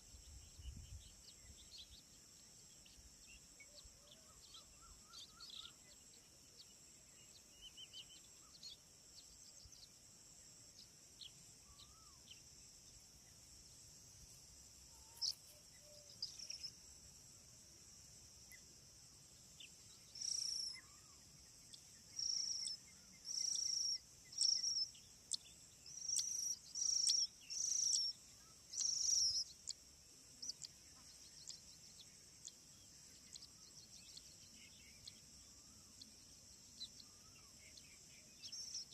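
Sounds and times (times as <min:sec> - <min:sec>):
insects droning: 0:00.0 - 0:38.9
nestlings begging calls: 0:25.9 - 0:28.1, 0:28.7 - 0:29.5.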